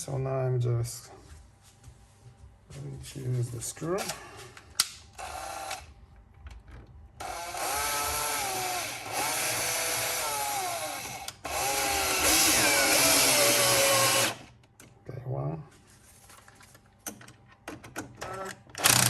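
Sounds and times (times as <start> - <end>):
electric screwdriver motor whining: 5.2 - 5.8, 7.2 - 14.5, 18.8 - 19.0.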